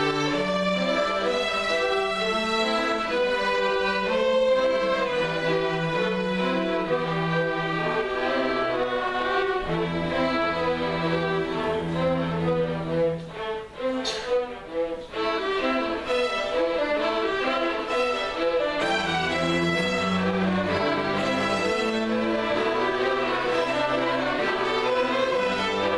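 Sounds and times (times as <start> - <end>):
strings playing sustained notes: 0.0 - 25.9.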